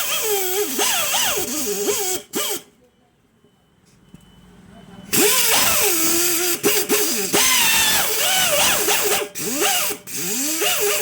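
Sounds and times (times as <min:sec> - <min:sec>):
power buffer grinding rubber: 0:05.2 - 0:11.0.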